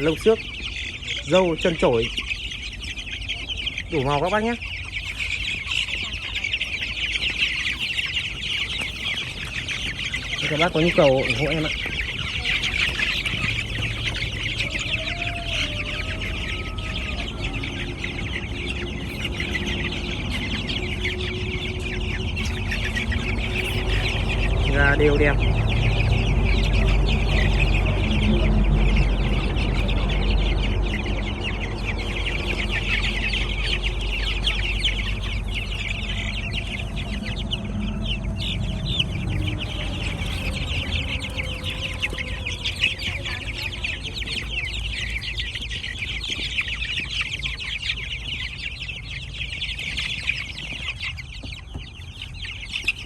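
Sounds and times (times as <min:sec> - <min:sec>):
chickens clucking and cheeping: 0:00.0 - 0:53.0
low rumble: 0:00.0 - 0:53.0.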